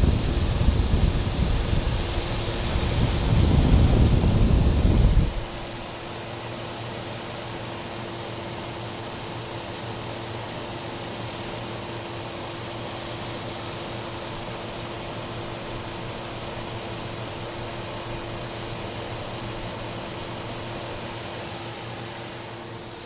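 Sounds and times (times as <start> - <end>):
compressor humming: 0.0 - 6.0, 11.7 - 23.0
dehumidifier fan blowing: 0.0 - 23.0.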